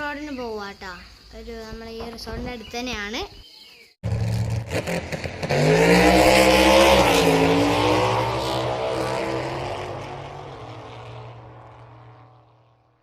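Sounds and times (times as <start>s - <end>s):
motor vehicle passing by: 4.0s - 13.0s.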